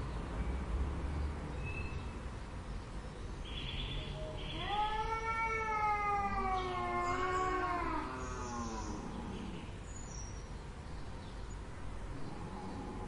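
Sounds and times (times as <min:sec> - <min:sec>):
cat meowing: 0:04.5 - 0:09.0.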